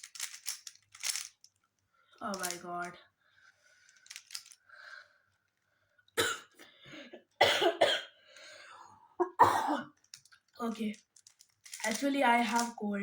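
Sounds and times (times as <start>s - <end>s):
boy coughing: 6.2s - 8.2s, 9.2s - 9.9s.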